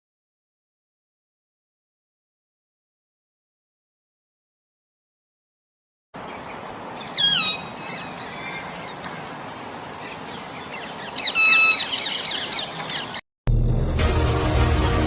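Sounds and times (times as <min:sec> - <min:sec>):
harsh squawking bird calls: 0:06.2 - 0:13.2
outdoor background noise: 0:06.2 - 0:13.2.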